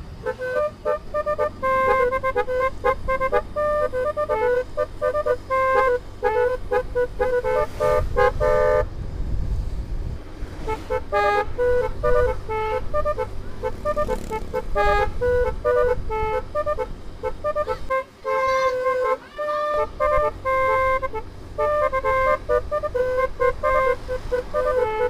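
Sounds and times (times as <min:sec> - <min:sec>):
musical air horn playing tune: 0:00.0 - 0:08.9, 0:10.5 - 0:25.0
low rumble: 0:06.9 - 0:10.9.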